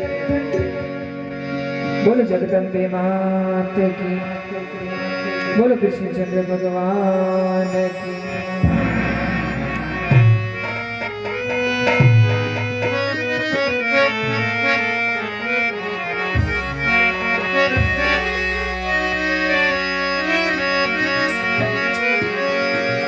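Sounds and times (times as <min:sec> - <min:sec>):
reedy held melody: 0:00.0 - 0:23.0
hand drum beats: 0:00.3 - 0:01.0, 0:16.4 - 0:18.8
deep drum strokes: 0:08.6 - 0:10.8.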